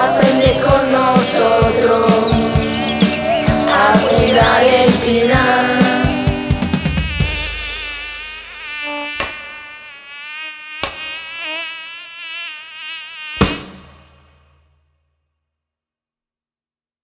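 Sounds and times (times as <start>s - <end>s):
wavering buzzing drone: 0.0s - 11.7s
sharp knocks: 9.2s - 9.5s, 10.8s - 11.1s, 13.4s - 14.4s.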